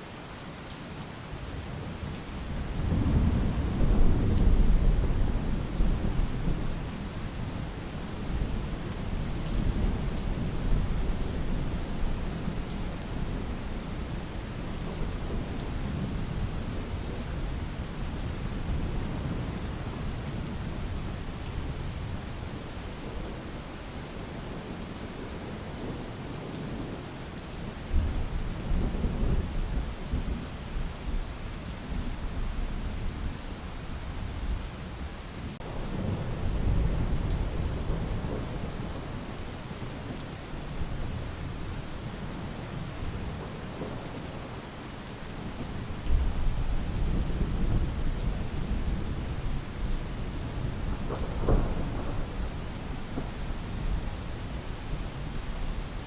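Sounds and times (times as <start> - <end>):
heavy rain falling: 0.0 - 56.0
low rolling thunder: 2.7 - 6.8, 35.6 - 39.9, 45.4 - 56.0.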